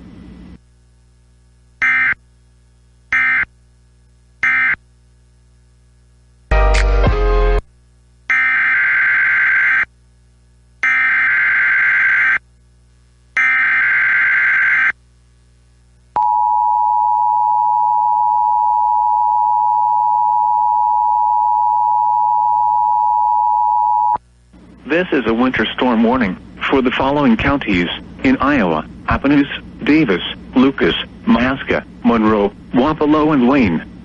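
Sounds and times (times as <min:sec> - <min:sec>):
steady warning alarm tone: 0:01.8 - 0:02.2, 0:03.1 - 0:03.5, 0:04.4 - 0:04.8, 0:08.3 - 0:09.9, 0:10.8 - 0:12.4, 0:13.4 - 0:14.9.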